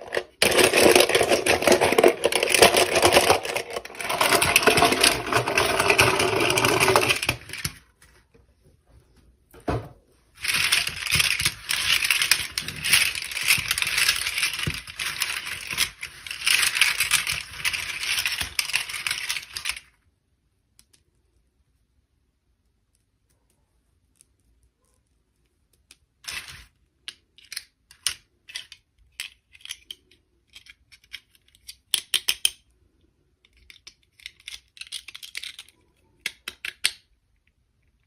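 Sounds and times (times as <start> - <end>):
crackling rattling handling noise: 0.0 - 7.8, 10.4 - 19.9.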